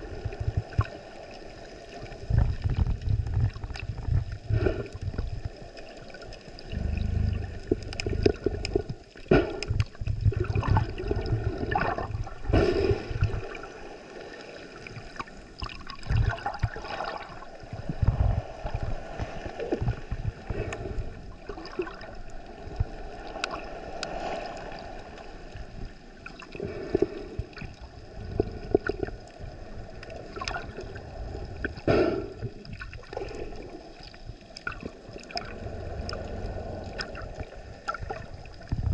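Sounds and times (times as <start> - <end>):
water sloshing and gurgling: 0.0 - 38.9
low rumbling surges: 6.6 - 8.9, 35.4 - 37.8.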